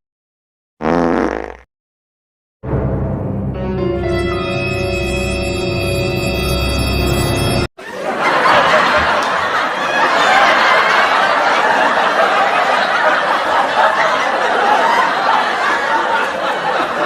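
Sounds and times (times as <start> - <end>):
eerie music: 2.6 - 7.7
crowd laughing: 7.8 - 17.0.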